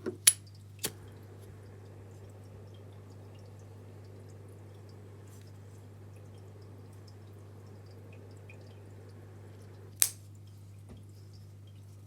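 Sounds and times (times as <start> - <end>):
sharp click: 10.0 - 10.2.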